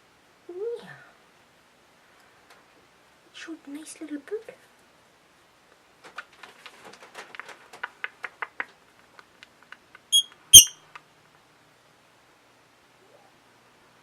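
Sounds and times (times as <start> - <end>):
high-pitched bird squeaks: 10.2 - 10.8
lovebird chattering: 10.2 - 10.8.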